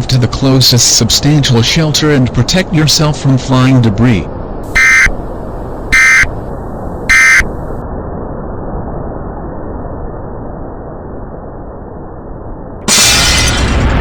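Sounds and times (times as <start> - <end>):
steady low rushing noise: 0.2 - 14.0
digital data bursts: 4.7 - 5.2, 6.0 - 6.3, 7.1 - 7.5.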